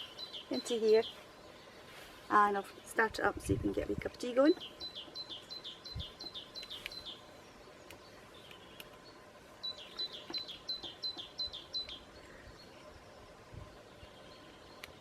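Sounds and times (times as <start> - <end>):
songbird singing high notes: 4.5 - 7.2, 9.6 - 12.7.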